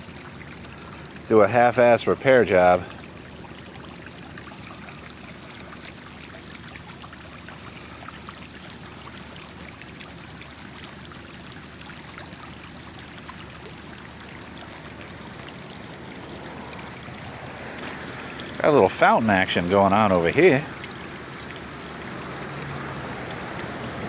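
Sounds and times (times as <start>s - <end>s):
water rushing from a leak: 0.0s - 24.0s
water splashing and trickling: 0.0s - 24.0s.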